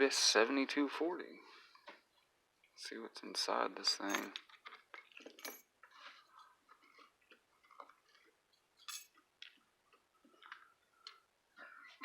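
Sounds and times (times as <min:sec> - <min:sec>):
small metal parts clicking: 0:08.8 - 0:09.2.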